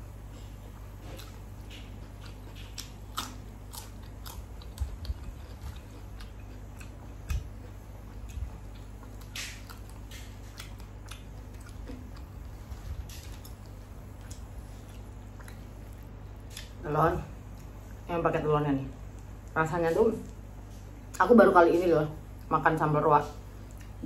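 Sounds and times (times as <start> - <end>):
person chewing food: 0.2 - 16.8, 23.5 - 24.0.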